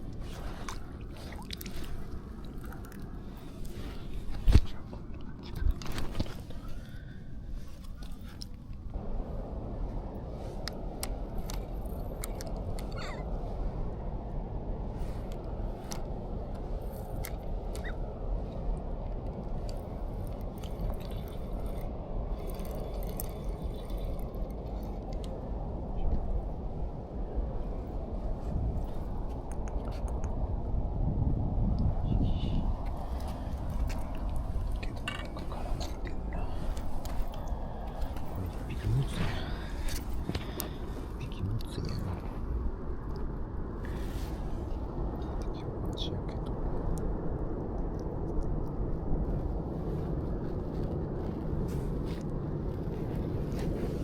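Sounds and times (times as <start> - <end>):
water sloshing and lapping: 0.0 - 8.8, 19.6 - 25.4, 32.8 - 42.0
steady low rumble: 0.0 - 54.0.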